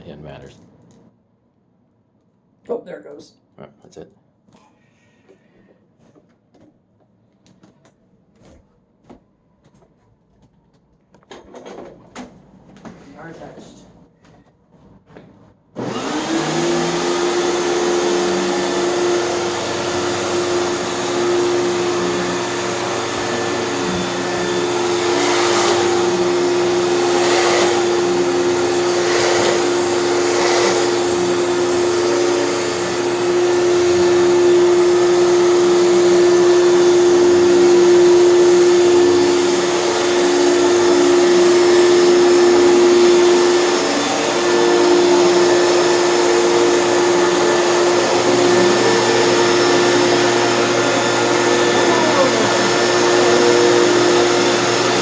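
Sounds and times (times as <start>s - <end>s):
vacuum cleaner running: 15.8s - 55.0s.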